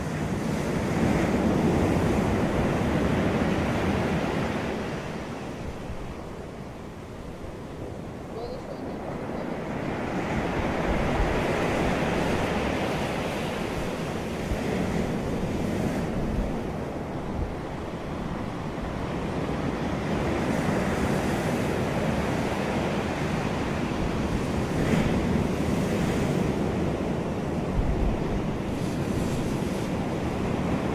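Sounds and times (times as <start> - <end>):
ocean surf washing onto beach: 0.0 - 30.9
wind buffeting microphone: 0.0 - 30.9.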